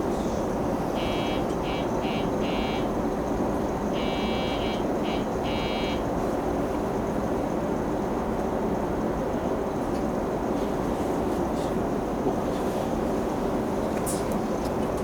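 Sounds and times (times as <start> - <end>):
low hum of train: 0.0 - 15.0
electronic buzzer: 1.0 - 2.9, 4.0 - 6.0.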